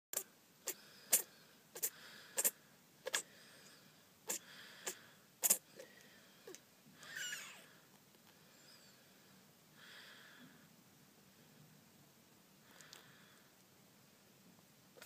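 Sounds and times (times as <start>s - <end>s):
kitten sneezing: 0.2s - 3.3s, 4.3s - 5.6s.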